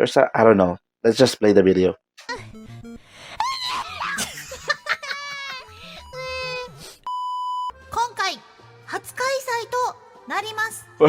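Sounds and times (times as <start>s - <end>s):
light background music: 2.3s - 11.0s
women squealing and laughing: 3.4s - 6.8s.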